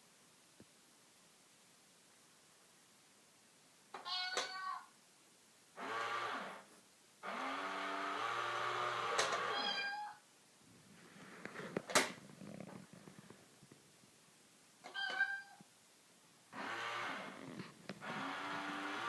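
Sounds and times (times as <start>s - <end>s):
cat meowing: 4.0s - 4.9s, 9.4s - 10.2s, 14.8s - 15.7s
cat yowling: 9.5s - 10.2s, 14.9s - 15.6s.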